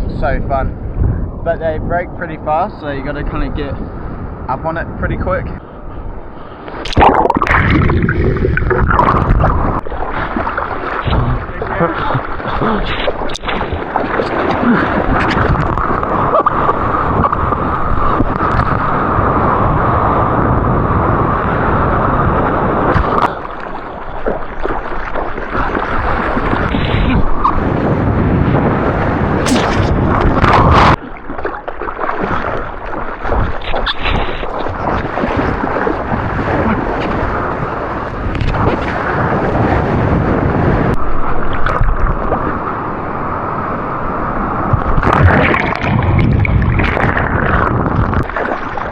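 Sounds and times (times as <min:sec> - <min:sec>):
wind buffeting microphone: 0:00.0 - 0:48.9
seawater rushing and splashing: 0:03.3 - 0:48.9.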